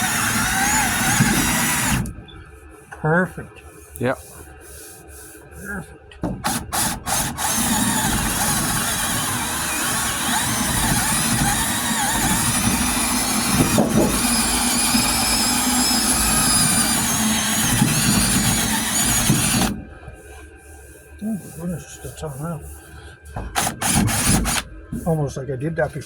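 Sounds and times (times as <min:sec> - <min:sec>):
power sander whining: 0:00.0 - 0:02.1, 0:06.6 - 0:19.8, 0:23.6 - 0:24.6.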